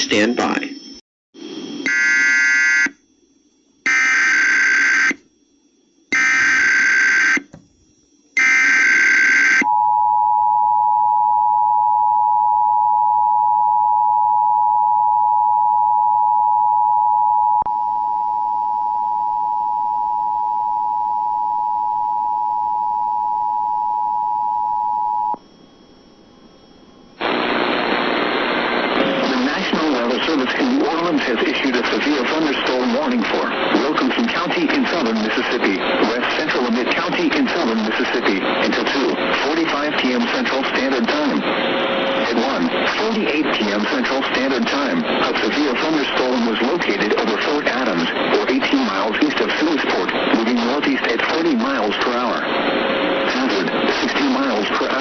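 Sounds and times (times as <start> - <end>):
spoken warning message: 0.0 - 0.8, 29.1 - 41.6, 42.2 - 52.6, 53.2 - 55.0.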